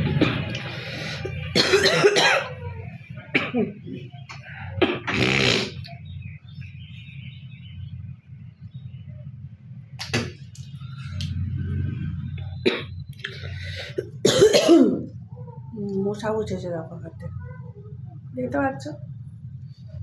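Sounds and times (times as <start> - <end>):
steady low hum: 0.0 - 20.0
woman coughing: 1.5 - 2.7, 3.3 - 3.8, 13.9 - 15.1.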